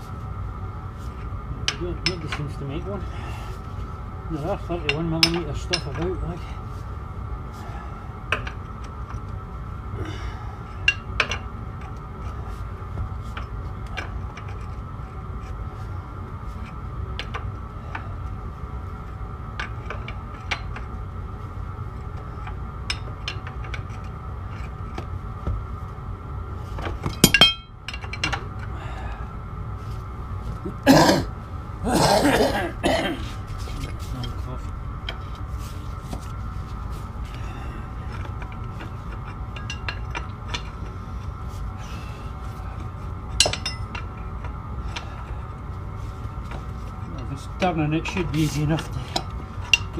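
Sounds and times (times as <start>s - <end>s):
steady hum: 0.0s - 49.9s
hand tools clinking on steel: 27.2s - 28.4s.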